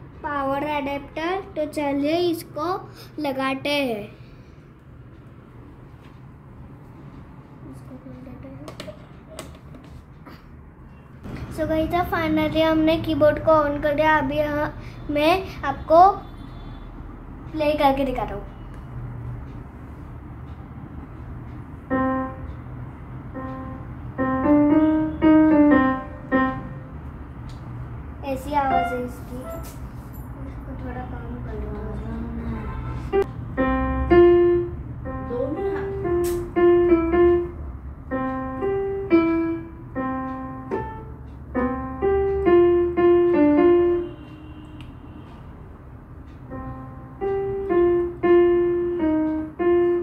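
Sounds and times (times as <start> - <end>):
keyboard piano notes: 20.4 - 27.4, 28.2 - 45.3, 46.1 - 50.0.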